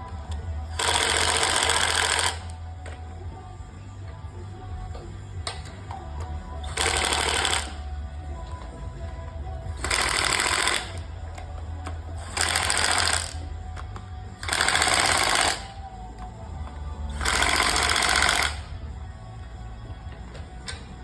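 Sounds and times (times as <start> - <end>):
radio music: 0.0 - 21.0
power drill running: 0.7 - 2.6, 6.6 - 8.0, 9.7 - 11.1, 12.2 - 13.6, 14.4 - 15.9, 17.1 - 18.8.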